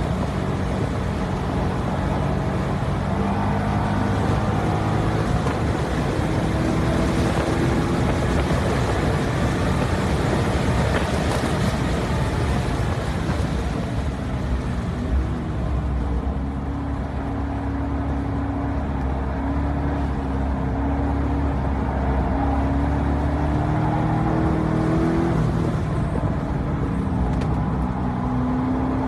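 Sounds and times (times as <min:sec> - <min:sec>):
wind noise: 0:00.0 - 0:15.8
car engine running under load: 0:00.0 - 0:29.0.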